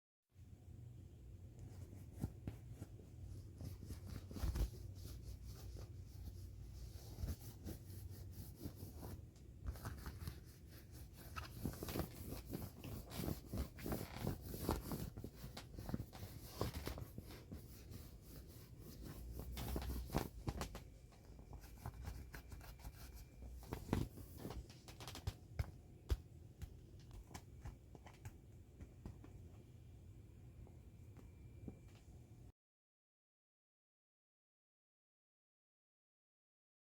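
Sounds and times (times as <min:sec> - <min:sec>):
hands rubbing vinyl toy: 0:01.7 - 0:29.4.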